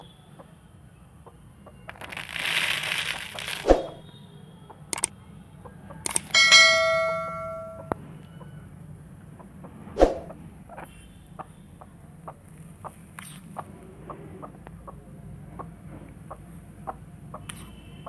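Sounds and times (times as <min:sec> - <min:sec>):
bright metallic ding: 0:06.1 - 0:07.9.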